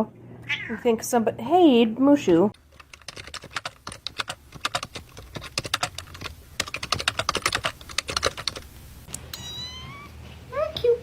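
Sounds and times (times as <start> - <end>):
rapid clicking and tapping: 2.6 - 8.8.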